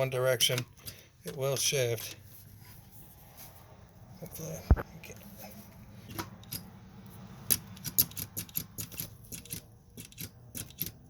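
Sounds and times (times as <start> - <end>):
metallic gearbox clicks: 7.5 - 11.0.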